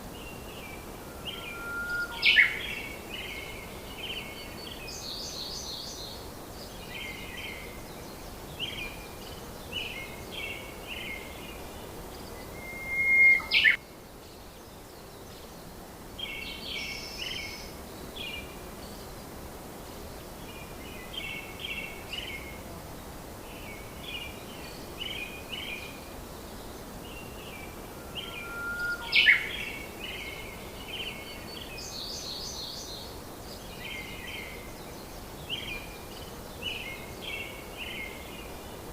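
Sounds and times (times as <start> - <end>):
steady hiss: 0.0 - 38.9
sharp bird call: 1.2 - 2.8, 12.5 - 13.8, 28.0 - 29.8
small birds chirping: 23.6 - 38.9.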